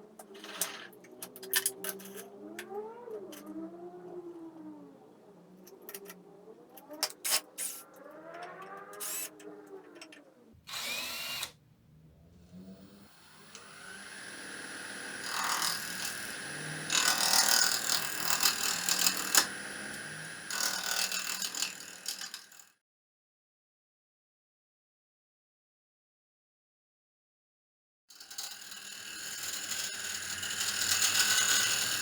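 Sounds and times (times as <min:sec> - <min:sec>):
power tool whining on wood: 0:07.6 - 0:11.6, 0:12.4 - 0:22.6, 0:28.3 - 0:32.0.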